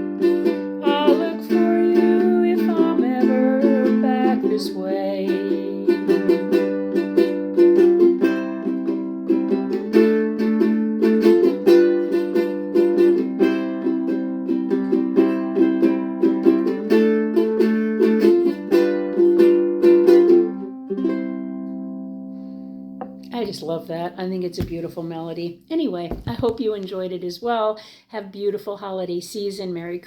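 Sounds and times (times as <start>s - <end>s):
ukulele playing: 0.0s - 23.6s.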